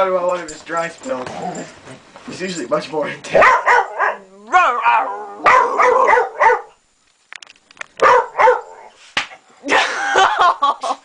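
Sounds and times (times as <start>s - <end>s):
dog barking: 3.4s - 4.2s, 5.4s - 6.8s, 8.0s - 8.9s.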